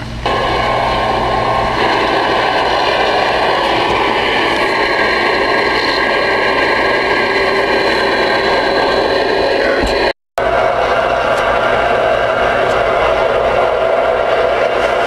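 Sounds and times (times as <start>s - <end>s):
radio static: 1.8s - 10.2s.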